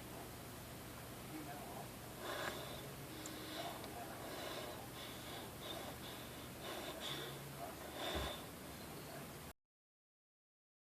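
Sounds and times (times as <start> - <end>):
woman breathing quietly: 2.2 - 9.1.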